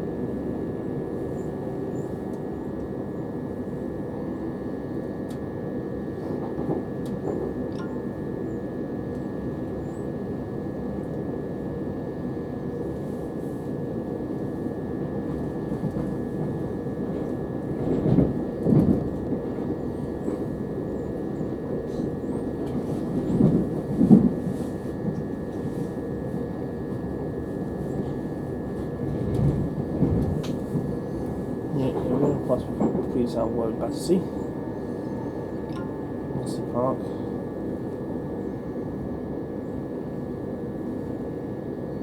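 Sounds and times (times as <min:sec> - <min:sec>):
train wheels rumbling on rail: 0:06.0 - 0:07.6, 0:12.7 - 0:41.2
train knocks and rattles: 0:06.2 - 0:08.1, 0:14.5 - 0:38.1.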